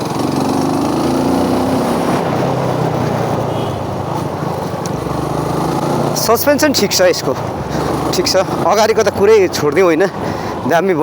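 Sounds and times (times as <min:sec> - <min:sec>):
motorcycle engine running: 0:00.0 - 0:08.9.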